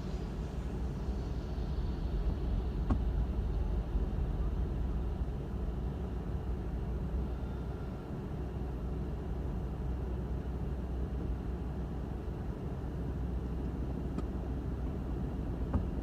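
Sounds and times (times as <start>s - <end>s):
car engine and road rumble: 0.0s - 16.0s.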